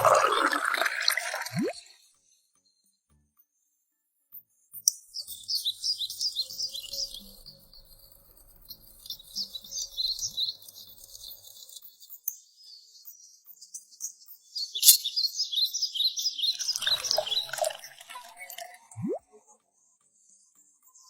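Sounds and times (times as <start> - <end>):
birds chirping: 14.7 - 19.4.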